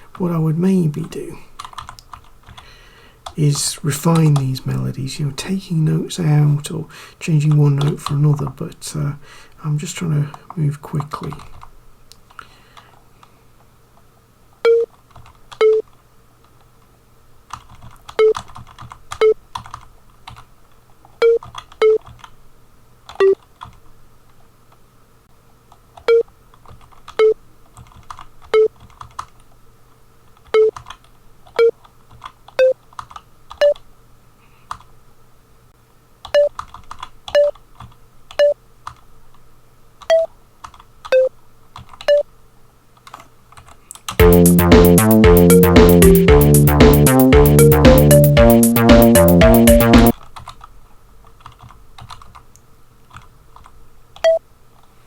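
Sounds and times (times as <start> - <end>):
computer keyboard typing: 1.6 - 2.6, 17.5 - 20.4, 21.2 - 22.3, 26.0 - 29.4, 30.4 - 33.8, 36.3 - 39.0, 40.0 - 41.2, 41.8 - 42.2, 43.0 - 50.6, 51.4 - 52.4, 53.1 - 54.4
short sampled notes: 44.2 - 50.1.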